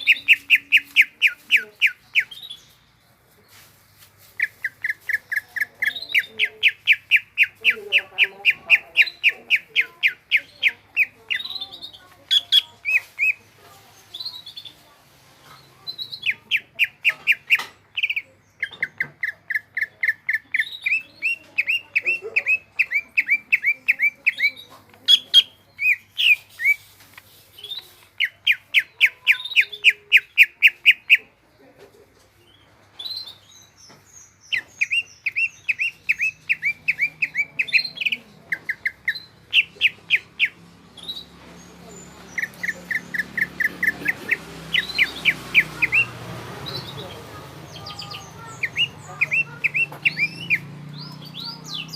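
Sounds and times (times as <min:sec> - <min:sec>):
bird singing whistled notes: 0:00.0 - 0:02.7, 0:33.0 - 0:43.9, 0:47.7 - 0:51.9.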